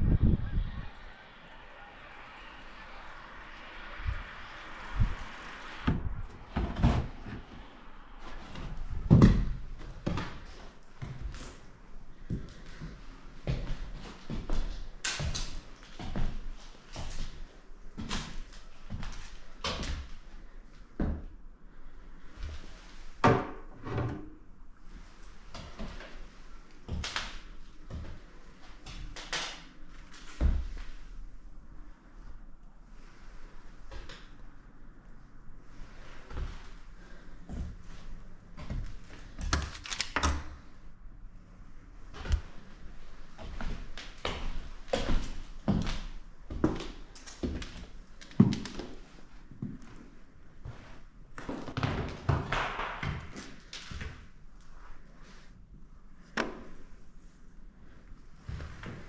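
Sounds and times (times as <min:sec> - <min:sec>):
faint hiss: 0:00.8 - 0:08.8.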